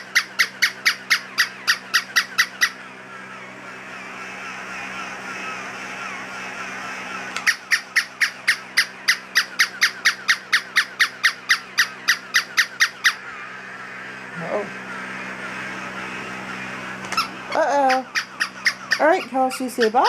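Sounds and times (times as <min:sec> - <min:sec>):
toy dog barking electronically: 0:17.7 - 0:20.0.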